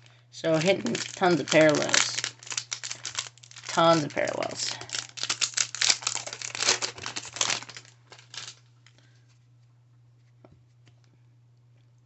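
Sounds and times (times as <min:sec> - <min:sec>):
wrapper tearing and crinkling: 0:00.5 - 0:08.7.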